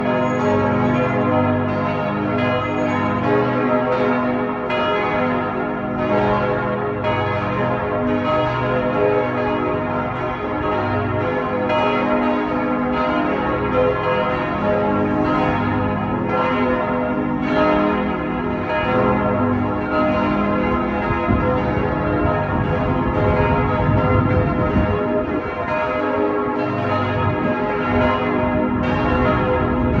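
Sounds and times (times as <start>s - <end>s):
church bells ringing: 0.0s - 30.0s.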